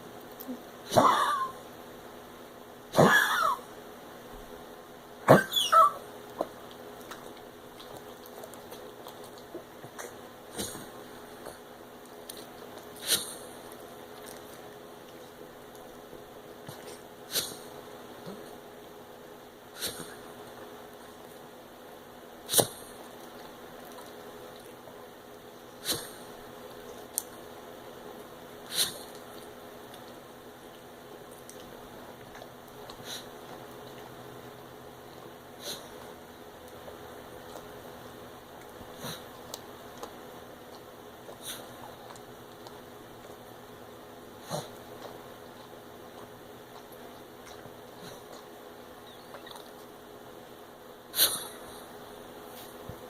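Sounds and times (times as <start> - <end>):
dog coughing: 0.8 - 1.6, 2.9 - 3.7, 5.2 - 6.1, 13.0 - 13.5, 19.8 - 20.2, 25.8 - 26.3, 35.6 - 36.0, 38.9 - 39.3, 44.4 - 44.8, 51.1 - 52.0
dog coughing and hacking: 0.8 - 1.6, 2.9 - 3.8, 5.2 - 6.6, 9.1 - 11.7, 12.3 - 13.7, 16.6 - 18.6, 19.7 - 20.3, 22.4 - 23.1, 25.8 - 26.4, 28.7 - 29.2, 35.5 - 36.1, 38.7 - 42.2, 44.4 - 48.6, 51.1 - 52.0.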